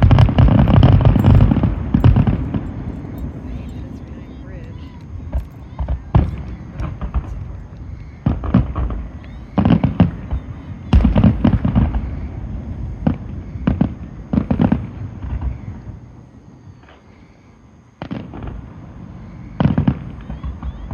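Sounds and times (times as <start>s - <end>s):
fireworks bangs: 0.0s - 15.8s.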